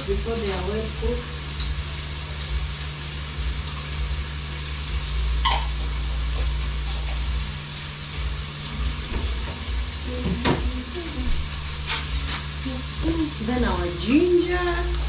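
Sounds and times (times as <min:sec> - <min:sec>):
low hum: 0:00.0 - 0:15.0
vegetables sizzling in a frying pan: 0:00.0 - 0:15.0
utensil knock: 0:10.3 - 0:10.8.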